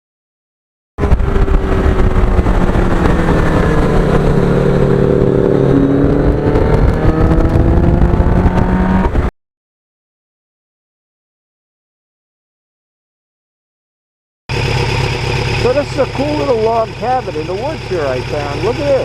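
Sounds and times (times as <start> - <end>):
motorcycle engine running: 1.0 - 9.3, 14.5 - 19.0
wind rumble on microphone: 1.0 - 9.3.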